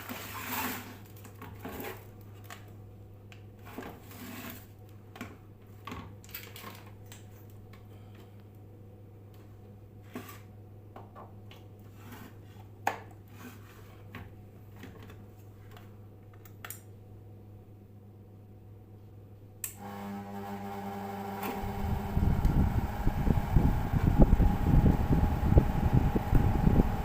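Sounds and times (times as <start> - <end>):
low electrical hum: 0.0 - 27.0
buzzing motor hum: 19.8 - 27.0.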